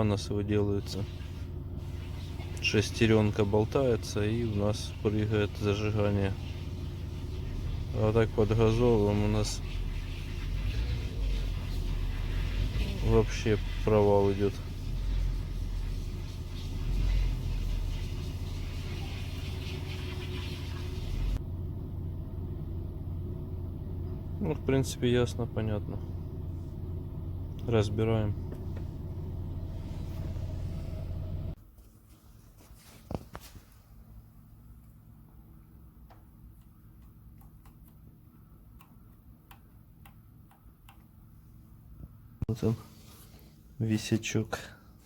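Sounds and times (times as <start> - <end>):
car engine idling: 0.0 - 31.6.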